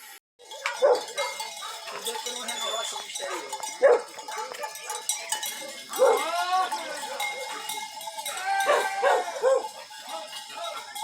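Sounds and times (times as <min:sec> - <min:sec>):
farm animal cries: 0:08.3 - 0:09.7.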